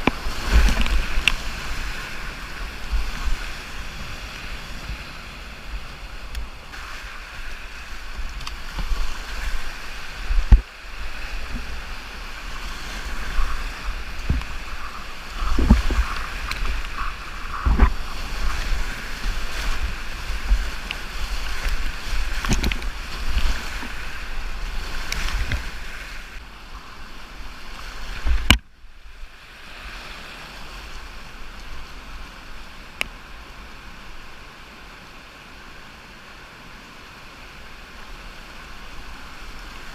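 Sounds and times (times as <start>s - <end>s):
wind buffeting microphone: 0.0s - 26.4s
rushing whitewater: 0.0s - 39.9s.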